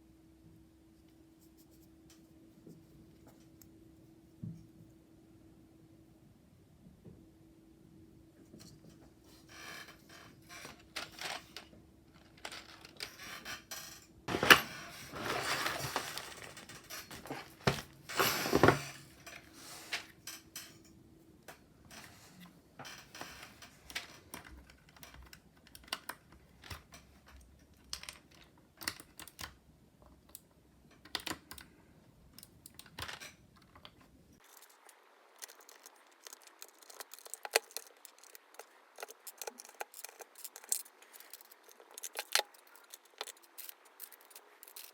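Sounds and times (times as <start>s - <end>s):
plastic keycaps clattering: 35.4s - 44.9s.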